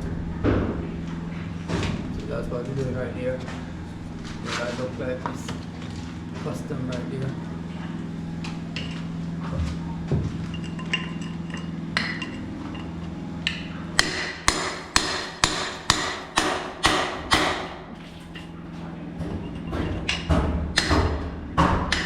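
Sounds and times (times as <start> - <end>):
hammer striking wood: 13.5 - 17.8, 19.2 - 22.0.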